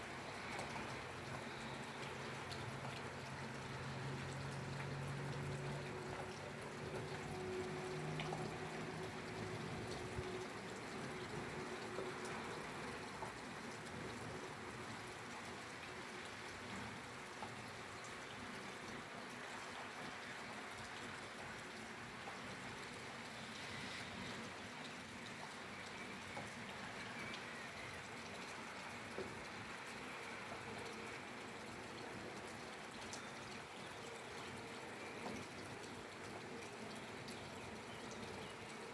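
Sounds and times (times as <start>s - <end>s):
raindrops ticking on a surface: 0.0s - 38.9s.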